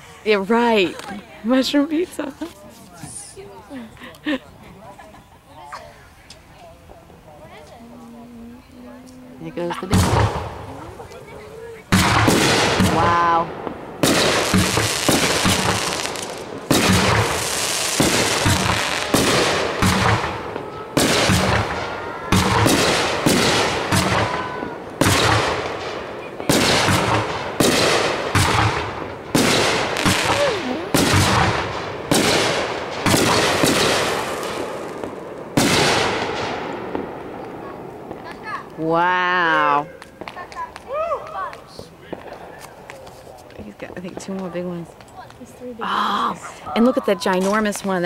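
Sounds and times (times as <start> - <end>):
aerial fireworks bursts: 9.3 - 38.8.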